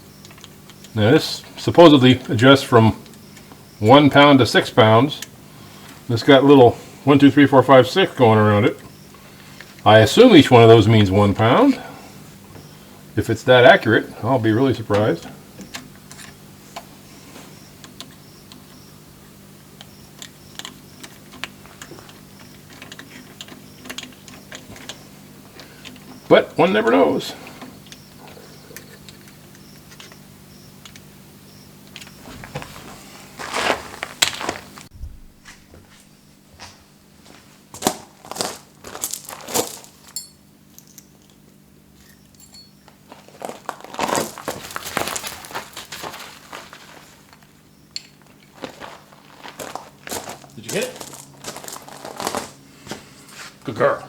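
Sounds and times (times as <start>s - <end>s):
steady low hum: 0.0s - 54.0s
crinkling and rustling handling: 32.0s - 34.9s, 35.6s - 42.2s, 42.8s - 53.7s.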